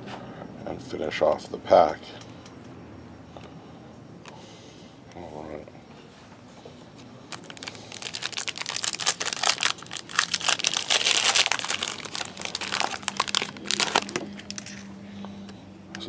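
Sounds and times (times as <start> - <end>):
card pack wrapper crinkling and tearing: 7.3 - 14.8.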